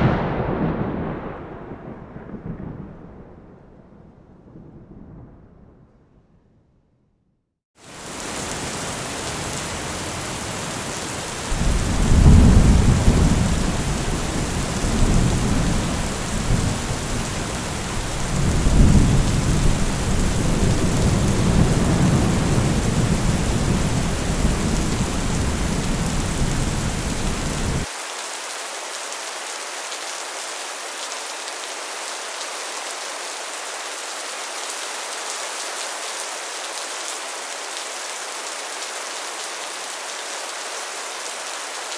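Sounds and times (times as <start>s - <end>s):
thunder rumbling: 0.0s - 6.8s, 8.1s - 27.9s
heavy rain on a metal roof: 7.8s - 41.9s.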